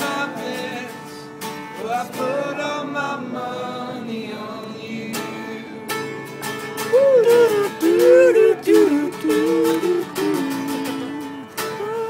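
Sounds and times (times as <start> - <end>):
acoustic guitar strumming: 0.0 - 12.0
wordless melody line: 7.3 - 11.8.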